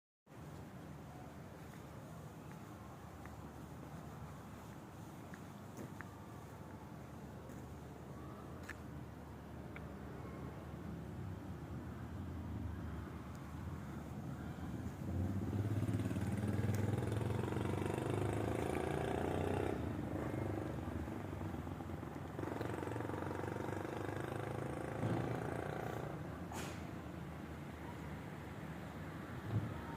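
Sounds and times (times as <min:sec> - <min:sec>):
vehicle engine passing: 0:14.3 - 0:27.0.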